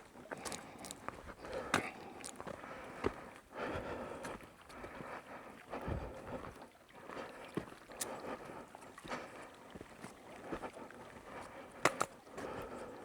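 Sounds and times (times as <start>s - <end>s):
small creek rushing: 4.1s - 12.9s.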